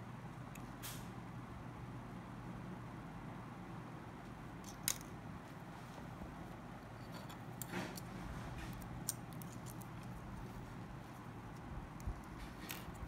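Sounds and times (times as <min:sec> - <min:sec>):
phone parts clicking: 0:04.6 - 0:05.2, 0:07.0 - 0:10.3.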